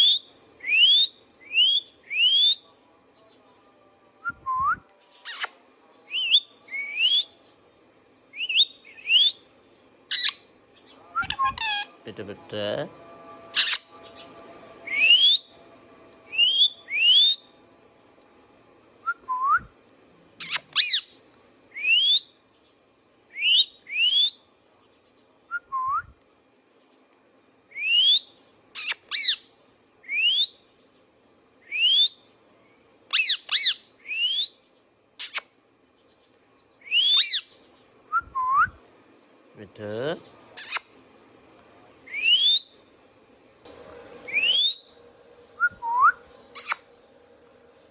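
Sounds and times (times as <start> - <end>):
parakeet whistles and shrieks: 5.2 - 7.3, 8.4 - 9.4, 10.1 - 10.4, 11.2 - 11.9, 13.5 - 13.9, 14.8 - 15.5, 20.4 - 21.2, 27.8 - 29.4, 30.1 - 30.6, 33.1 - 34.6, 35.2 - 35.5, 36.8 - 37.5, 40.6 - 40.9, 42.1 - 42.7, 44.3 - 44.9, 45.8 - 46.9.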